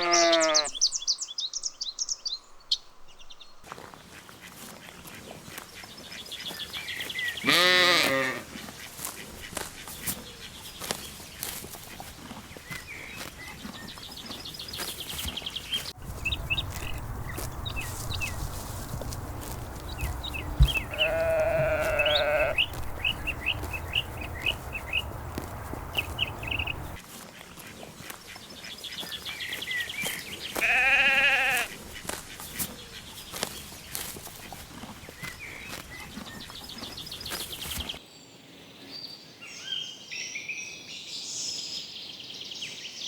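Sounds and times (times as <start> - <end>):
lambs bleating: 0.0 - 0.7, 7.4 - 8.5, 19.4 - 24.5, 30.6 - 31.8
small birds chirping: 0.0 - 38.0.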